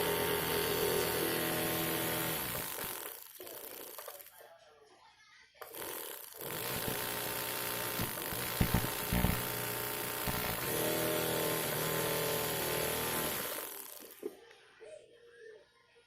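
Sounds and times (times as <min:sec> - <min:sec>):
blender motor running: 0:00.0 - 0:04.3, 0:05.6 - 0:14.2.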